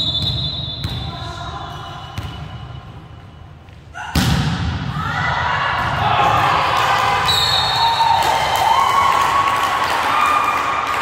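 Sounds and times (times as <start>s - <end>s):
crowd shouting and cheering: 4.8s - 11.0s.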